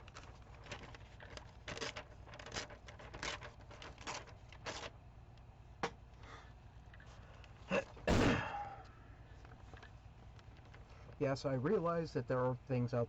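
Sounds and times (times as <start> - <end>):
paper tearing: 0.1 - 4.9.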